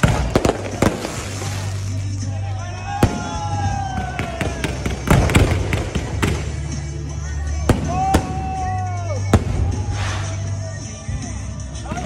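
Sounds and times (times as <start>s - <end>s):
fireworks bangs: 0.0s - 2.3s, 3.0s - 6.9s
fireworks crackling: 0.0s - 12.0s.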